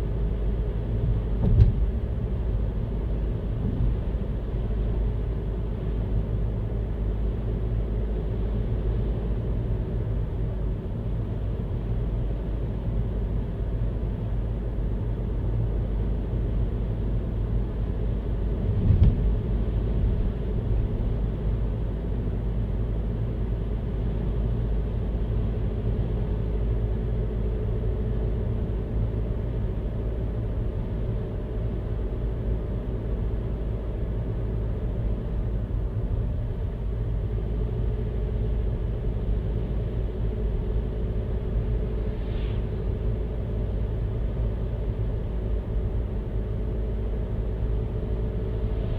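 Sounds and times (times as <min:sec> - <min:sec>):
car road and engine rumble: 0:00.0 - 0:48.9
thump: 0:01.4 - 0:02.0, 0:18.8 - 0:19.3.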